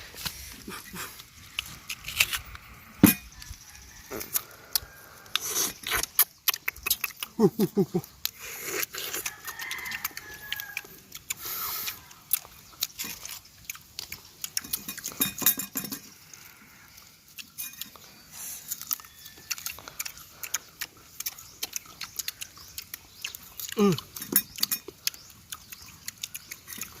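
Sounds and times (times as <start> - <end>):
chewing crunchy mango: 0.1 - 27.0.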